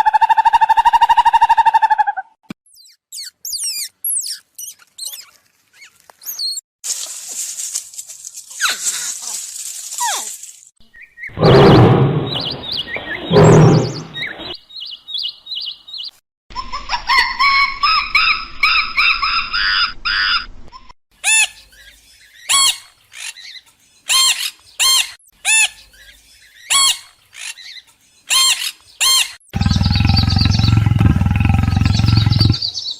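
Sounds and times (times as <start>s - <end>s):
bird chirps: 2.7s - 6.6s, 10.8s - 16.2s, 25.7s - 32.9s
loud animal calls: 13.2s - 14.1s, 29.6s - 32.6s.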